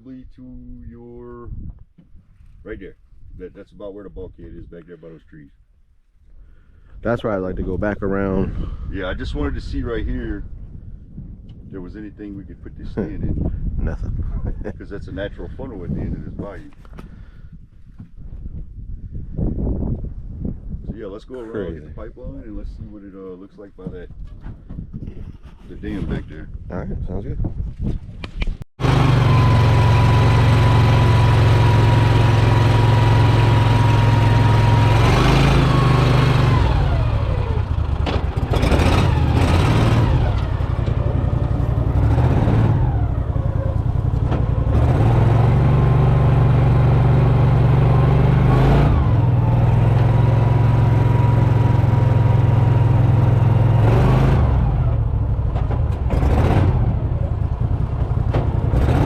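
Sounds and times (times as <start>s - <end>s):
boat motor droning: 28.8s - 48.8s.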